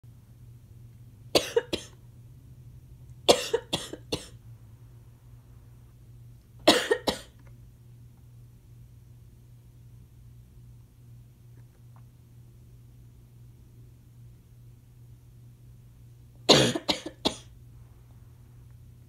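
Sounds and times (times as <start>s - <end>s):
person coughing: 1.4s - 2.0s, 3.3s - 4.4s, 6.6s - 7.4s, 16.5s - 17.5s.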